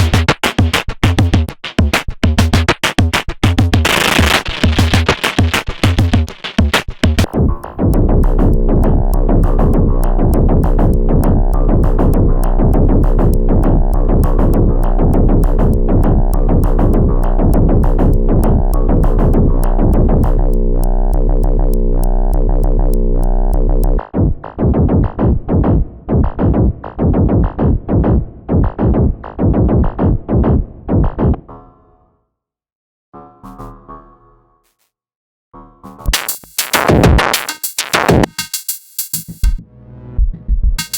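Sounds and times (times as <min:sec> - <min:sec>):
pitched drum hits: 0:00.0 - 0:08.3
fast ticking hi-hats: 0:00.0 - 0:19.4, 0:36.1 - 0:39.6
deep sustained bass: 0:07.2 - 0:25.9.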